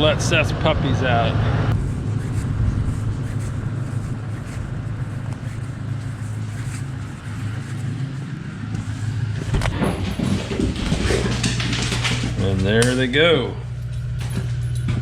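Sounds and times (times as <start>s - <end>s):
pickup truck engine idling: 1.8s - 9.5s.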